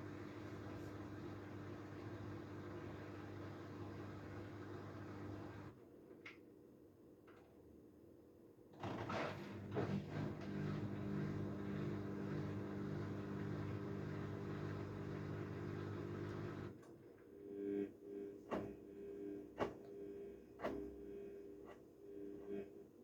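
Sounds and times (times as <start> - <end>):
faint steady hum: 13.2 - 23.0.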